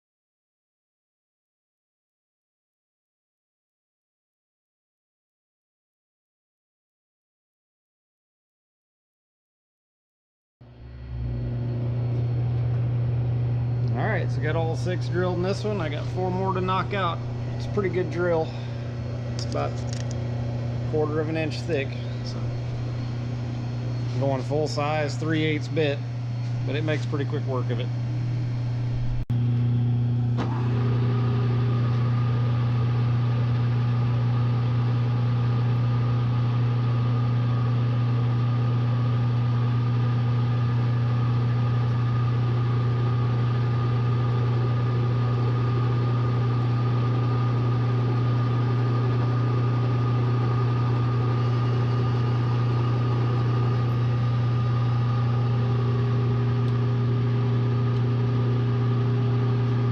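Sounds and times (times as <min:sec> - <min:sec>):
electric motor hum: 0:10.6 - 0:59.9.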